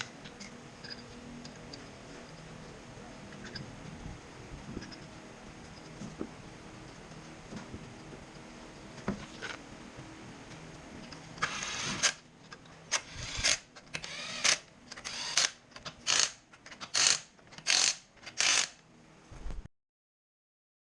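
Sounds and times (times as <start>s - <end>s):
ratchet wrench clicking: 12.9s - 18.8s.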